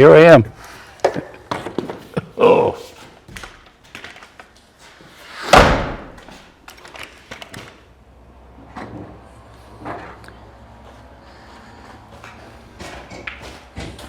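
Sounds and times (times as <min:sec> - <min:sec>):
door slamming: 0:05.4 - 0:06.4.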